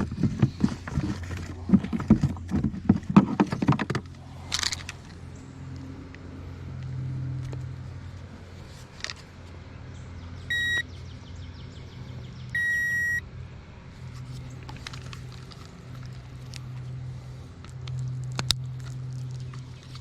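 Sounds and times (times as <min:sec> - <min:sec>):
low motor hum: 0:00.0 - 0:20.0
electronic beeps: 0:10.5 - 0:10.9, 0:12.6 - 0:13.2.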